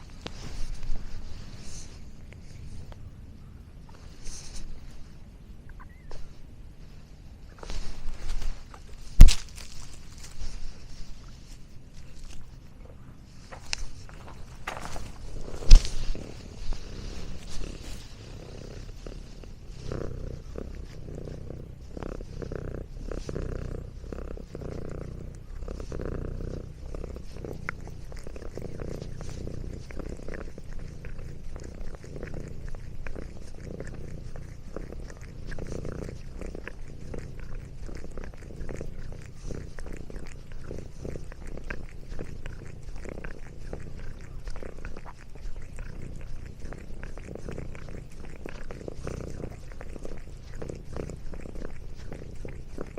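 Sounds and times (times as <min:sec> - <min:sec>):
cat purring: 0:00.0 - 0:52.9
chewing clicks: 0:24.6 - 0:52.9.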